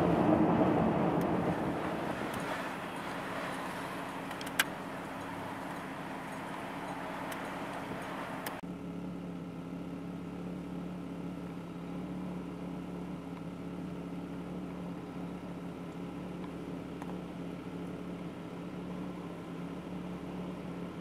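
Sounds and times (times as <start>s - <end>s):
wind rushing: 0.0s - 4.2s
vehicle engine idling: 0.0s - 21.0s.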